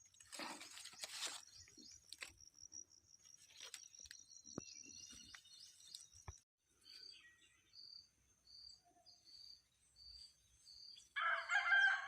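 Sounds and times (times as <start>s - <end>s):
cricket chirping: 0.0s - 6.4s
rooster crowing: 11.2s - 12.0s.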